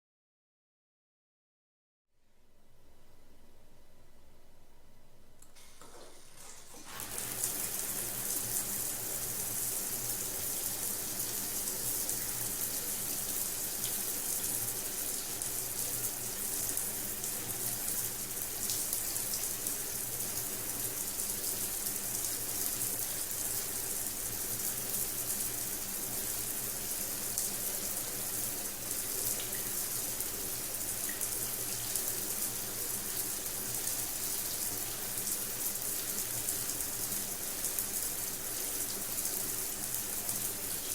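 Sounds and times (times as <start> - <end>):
shower head spraying water: 6.3 - 8.0.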